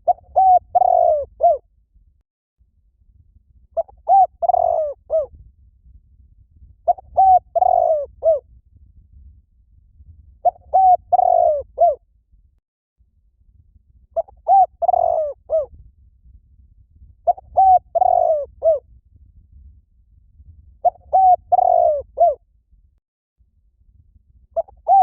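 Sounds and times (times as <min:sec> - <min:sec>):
dove cooing: 0:00.0 - 0:01.6, 0:03.8 - 0:05.3, 0:06.9 - 0:08.4, 0:10.4 - 0:12.0, 0:14.2 - 0:15.7, 0:17.3 - 0:18.8, 0:20.8 - 0:22.4, 0:24.6 - 0:25.0.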